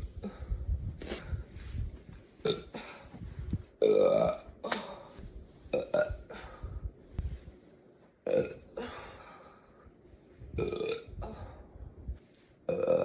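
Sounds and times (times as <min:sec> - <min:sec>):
woman burping loudly: 0:03.8 - 0:04.5, 0:08.3 - 0:08.7, 0:10.6 - 0:11.2.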